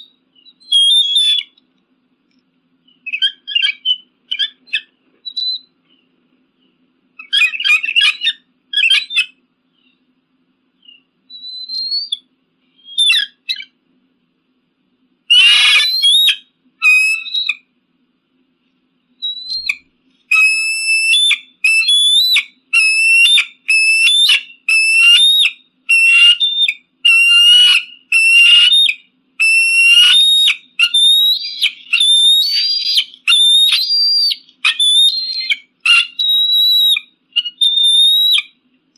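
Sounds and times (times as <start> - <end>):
eagle calling: 0.0 - 1.6, 2.8 - 10.0, 10.8 - 13.8, 15.3 - 17.7, 19.2 - 38.6
harsh squawk: 7.2 - 9.4, 15.3 - 17.6, 19.4 - 38.5.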